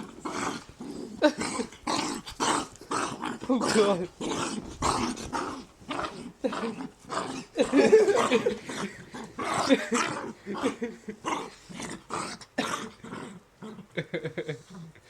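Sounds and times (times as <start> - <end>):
dog growling and barking: 0.0 - 14.0.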